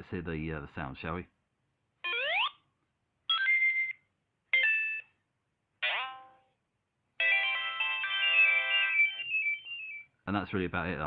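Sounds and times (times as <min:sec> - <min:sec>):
electronic tune: 0:07.6 - 0:10.1
electronic rising and falling sweeps: 0:08.9 - 0:10.0
short electronic beeps: 0:08.9 - 0:10.1.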